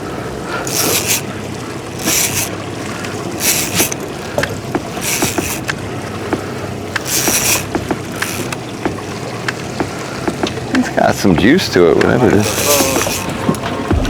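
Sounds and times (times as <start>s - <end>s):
water hissing along boat hull: 0.0s - 14.0s
clicks and knocks from gear: 0.6s - 14.0s.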